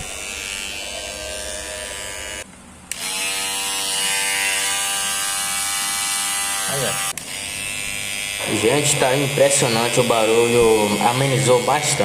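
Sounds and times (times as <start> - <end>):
electric hair clipper buzzing: 0.0 - 12.0.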